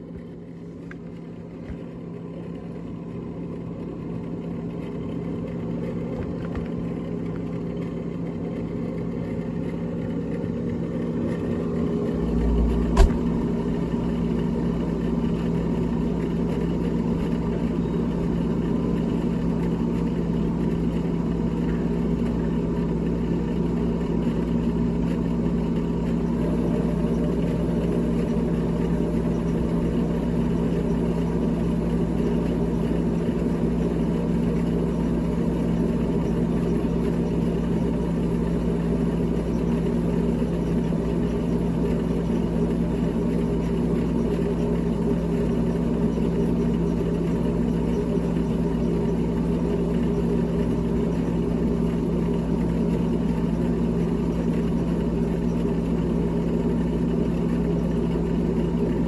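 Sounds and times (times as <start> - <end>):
refrigerator motor hum: 0.0 - 59.0
deep rumble: 11.6 - 14.2
sharp click: 12.4 - 13.5.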